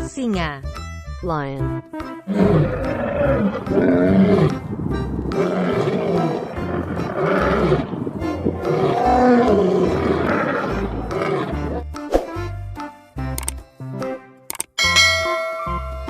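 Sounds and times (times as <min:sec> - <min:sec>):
background music: 0:00.0 - 0:16.0
lion roaring: 0:02.3 - 0:11.8.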